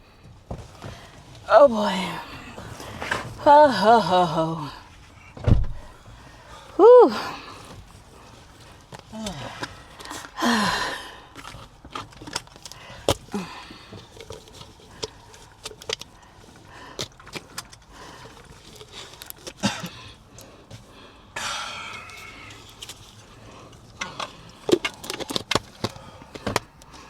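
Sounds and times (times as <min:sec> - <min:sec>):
person sighing: 0:03.4 - 0:04.9, 0:06.6 - 0:07.6, 0:09.1 - 0:09.8, 0:10.4 - 0:11.2, 0:13.3 - 0:13.9
clicks and knocks of handled objects: 0:11.3 - 0:20.9, 0:21.9 - 0:27.0.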